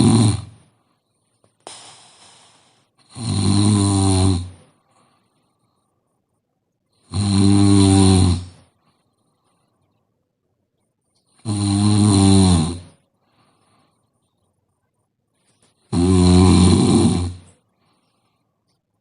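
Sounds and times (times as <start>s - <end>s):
woman snoring: 0.0s - 0.7s, 1.7s - 4.8s, 7.0s - 8.6s, 11.4s - 13.0s, 15.9s - 17.5s.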